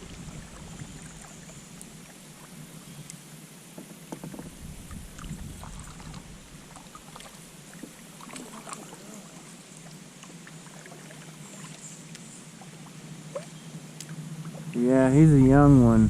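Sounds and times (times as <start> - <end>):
water sloshing against kayak: 0.0 - 14.8
clicks and knocks on hull: 3.7 - 4.6.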